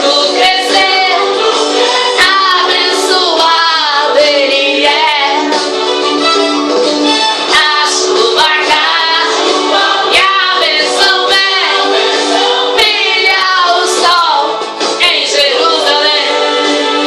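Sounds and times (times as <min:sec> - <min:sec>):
group singing worship song: 0:00.0 - 0:05.7, 0:07.5 - 0:17.0
instrumental backing: 0:00.0 - 0:17.0.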